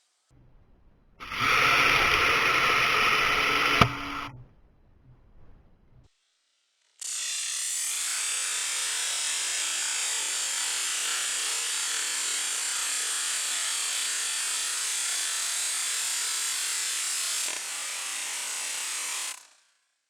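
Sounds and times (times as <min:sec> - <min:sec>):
pressure washer jet hissing: 0:01.2 - 0:04.4.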